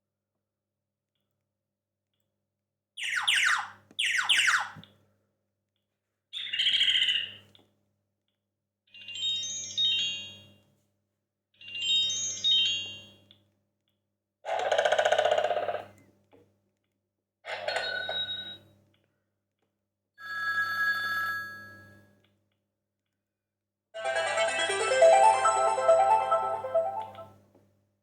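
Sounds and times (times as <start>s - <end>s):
high chiming notes: 24.0s - 27.3s
loud phone alert tone: 24.0s - 27.3s.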